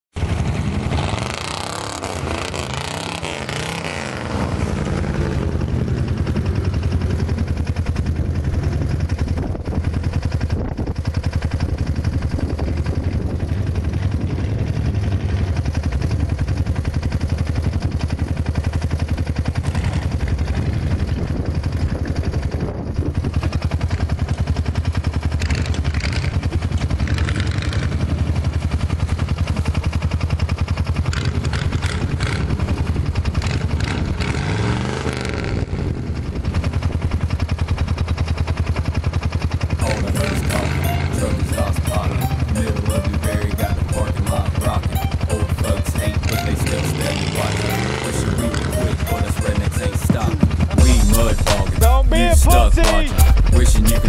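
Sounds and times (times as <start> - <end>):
truck engine revving: 0.2 - 9.0, 19.5 - 21.5, 25.4 - 28.5, 31.0 - 36.0, 39.8 - 54.0.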